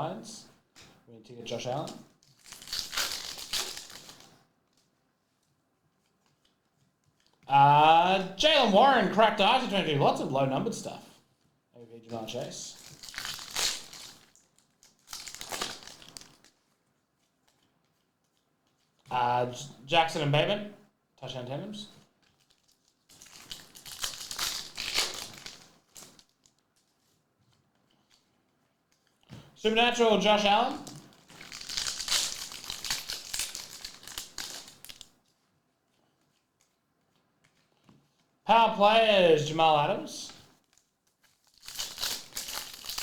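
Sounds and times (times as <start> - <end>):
foil wrapper crinkling: 1.7 - 4.8, 12.7 - 16.7, 22.2 - 27.1, 30.0 - 35.4, 40.5 - 43.0.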